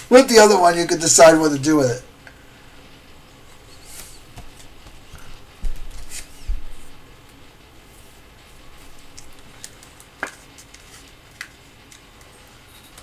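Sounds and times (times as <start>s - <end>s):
cards and packaging rustling: 9.4s - 12.2s.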